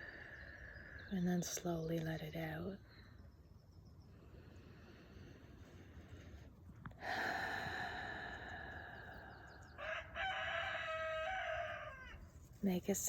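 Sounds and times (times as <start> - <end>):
breathy exhale: 7.0 - 9.8
rooster crowing: 9.7 - 12.3.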